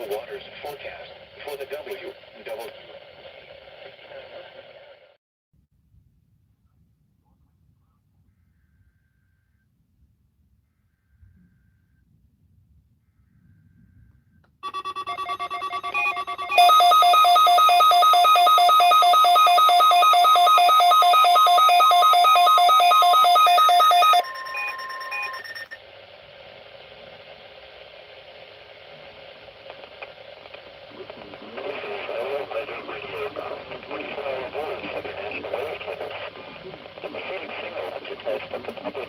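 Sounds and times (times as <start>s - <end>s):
faint radio hiss: 0.0s - 5.2s, 6.5s - 9.8s, 13.0s - 39.0s
rapid electronic beeping alarm: 14.6s - 25.8s
steady warning tone: 14.6s - 25.8s.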